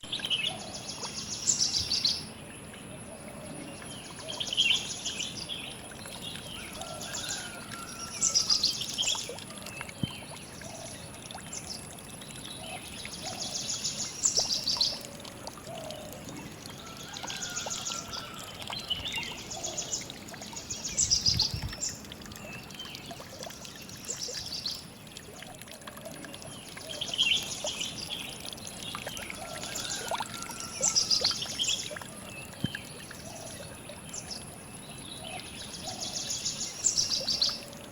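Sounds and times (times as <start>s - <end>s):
songbirds trilling: 0.2s - 24.9s, 26.0s - 37.9s.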